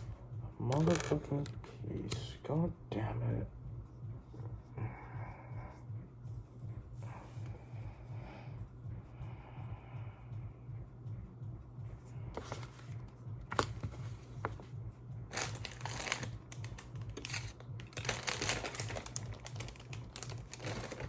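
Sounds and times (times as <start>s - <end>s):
steady low hum: 0.0s - 21.0s
plastic pieces clicking and rattling: 0.7s - 1.6s, 15.3s - 21.0s.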